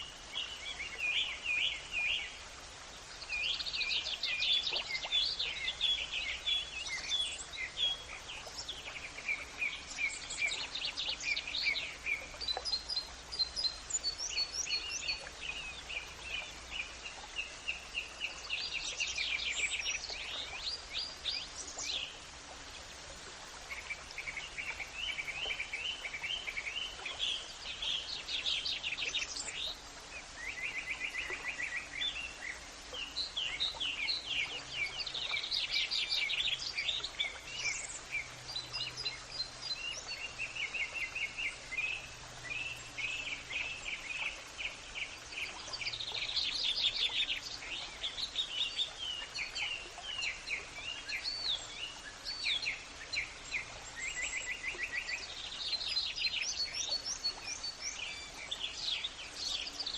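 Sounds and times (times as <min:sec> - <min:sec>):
faint background noise: 0:00.0 - 0:59.9
songbirds trilling and chirping: 0:00.0 - 0:59.9.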